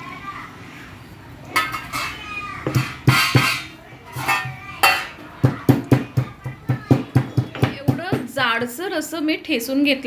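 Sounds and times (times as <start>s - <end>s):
pestle pounding in mortar: 5.4s - 8.3s.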